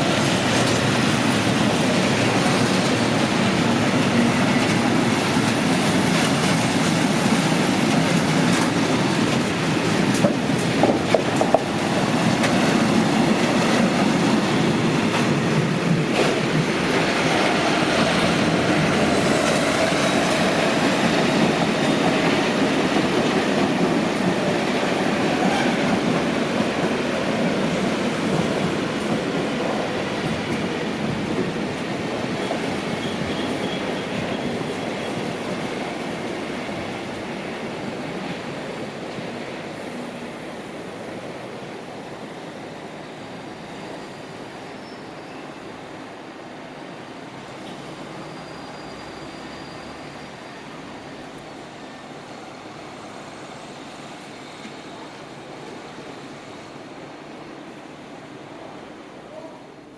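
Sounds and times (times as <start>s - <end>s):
freight train wheels clattering: 0.0s - 35.6s.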